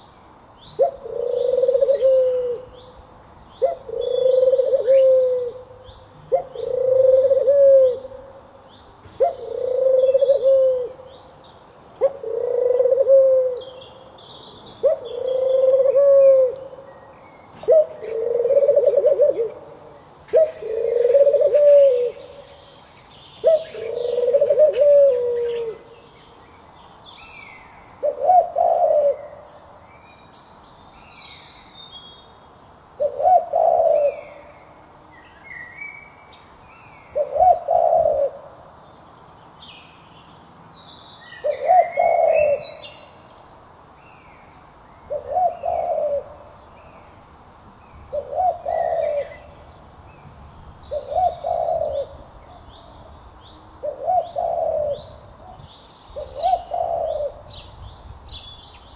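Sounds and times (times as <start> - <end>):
small birds chirping: 22.1 - 28.0, 38.8 - 58.9.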